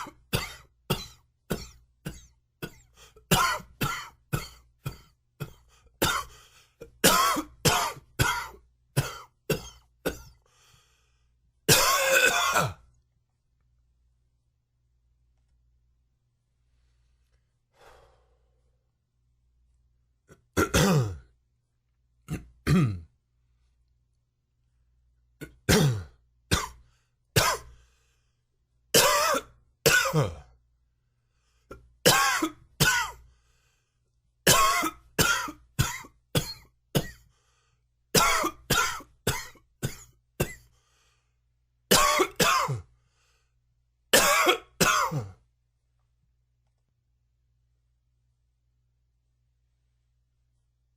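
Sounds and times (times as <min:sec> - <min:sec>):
man coughing: 0:00.0 - 0:10.4, 0:11.7 - 0:12.9, 0:20.4 - 0:21.3, 0:22.3 - 0:23.1, 0:25.4 - 0:26.8, 0:27.4 - 0:27.7, 0:29.0 - 0:30.5, 0:31.7 - 0:33.2, 0:34.5 - 0:37.2, 0:38.2 - 0:40.7, 0:41.9 - 0:42.9, 0:44.1 - 0:45.4.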